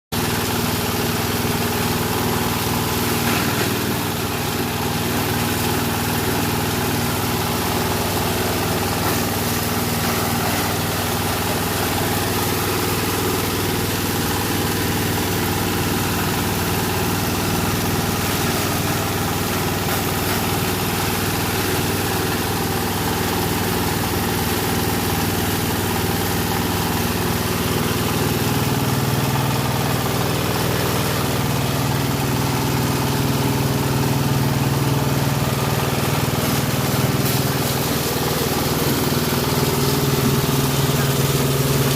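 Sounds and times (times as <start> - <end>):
cutter chopping corn stalks: 2.2 - 22.2
engine humming: 27.4 - 41.9.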